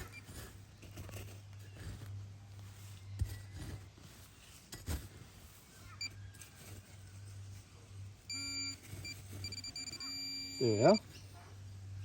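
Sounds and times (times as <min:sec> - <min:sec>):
metal detector beep: 0:08.3 - 0:11.2.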